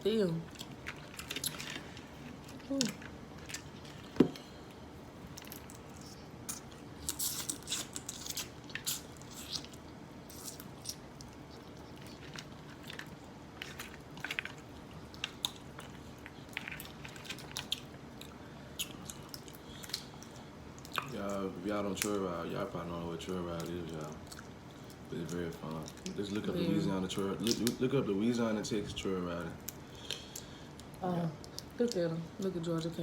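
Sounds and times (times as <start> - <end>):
wet chewing and smacking: 0.4 - 27.9, 29.3 - 32.1.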